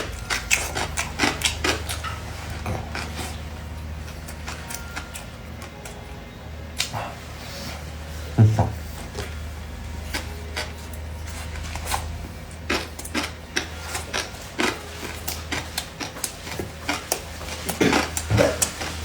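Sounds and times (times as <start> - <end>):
chewing crunches: 0.0 - 6.0, 10.1 - 19.0
steady low hum: 0.0 - 19.0.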